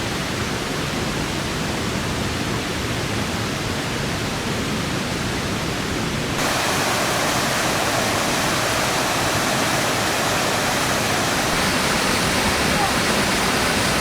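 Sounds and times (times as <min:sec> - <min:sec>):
stream water cascading: 0:06.3 - 0:14.0.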